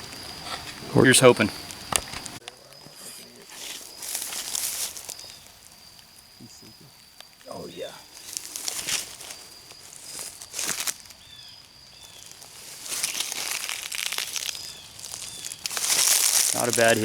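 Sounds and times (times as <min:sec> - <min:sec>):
footsteps crunching through dry leaves: 0:01.8 - 0:05.8, 0:08.0 - 0:17.0.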